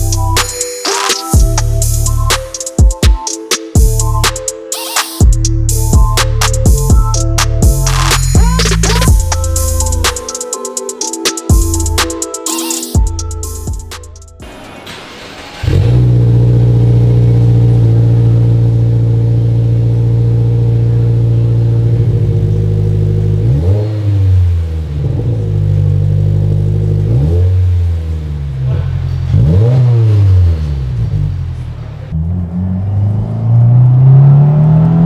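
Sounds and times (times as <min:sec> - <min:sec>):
car engine idling: 0:00.0 - 0:00.7, 0:01.3 - 0:03.0, 0:05.2 - 0:10.4, 0:11.2 - 0:12.3, 0:13.0 - 0:33.4
engine revving: 0:05.9 - 0:10.3, 0:14.4 - 0:35.0.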